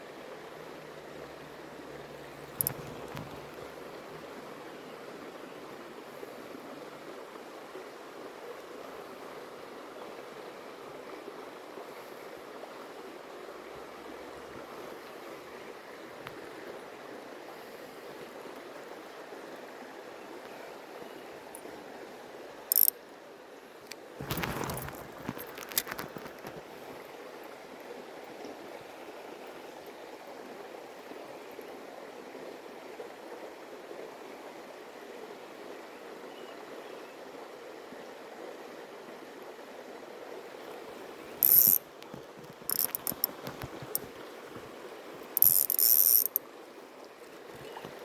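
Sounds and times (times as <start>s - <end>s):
fishing reel whirring and clicking: 2.3s - 3.5s, 22.7s - 22.9s, 41.4s - 41.8s, 42.5s - 44.1s, 45.3s - 46.4s.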